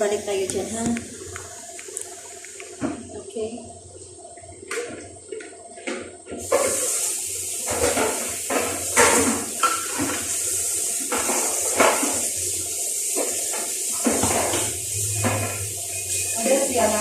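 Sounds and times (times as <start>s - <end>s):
tap water running into sink: 4.7s - 17.0s
dishes knocking: 14.0s - 15.6s.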